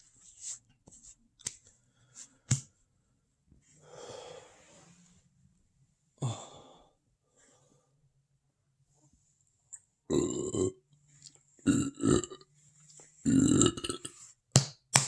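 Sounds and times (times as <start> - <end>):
person exhaling heavily: 3.8 - 4.9, 6.2 - 7.6.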